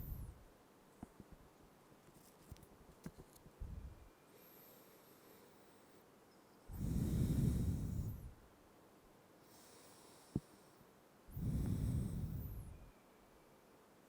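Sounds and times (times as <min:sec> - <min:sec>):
deep breaths: 0:06.7 - 0:08.4, 0:09.4 - 0:12.9.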